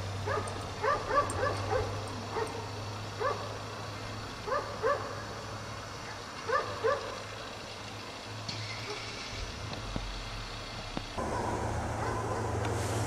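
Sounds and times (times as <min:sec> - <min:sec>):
dog barking: 0:00.2 - 0:03.6, 0:04.5 - 0:05.2, 0:06.5 - 0:07.2, 0:12.0 - 0:12.6.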